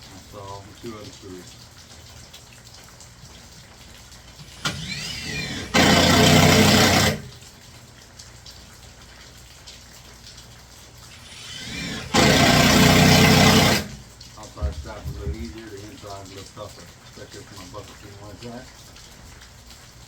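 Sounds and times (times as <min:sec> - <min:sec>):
impact driver whirring: 0:04.4 - 0:07.3, 0:11.2 - 0:14.0
impact driver hammering: 0:04.6 - 0:07.3, 0:11.4 - 0:14.0.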